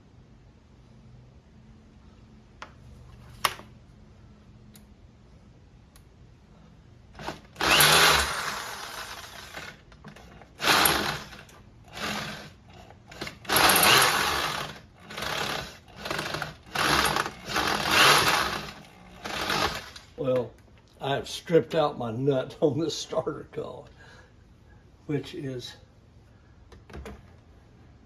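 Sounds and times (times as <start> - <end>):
power drill bursts: 7.2 - 20.2.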